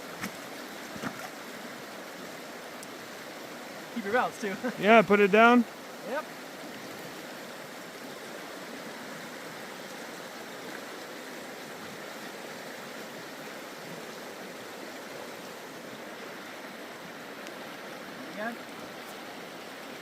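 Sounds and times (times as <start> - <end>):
flowing creek water: 0.0 - 20.0.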